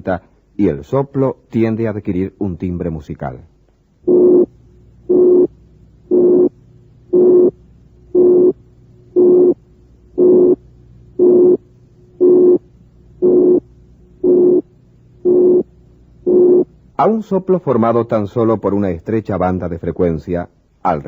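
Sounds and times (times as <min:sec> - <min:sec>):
pulsing filtered noise with tone: 0:04.0 - 0:16.9.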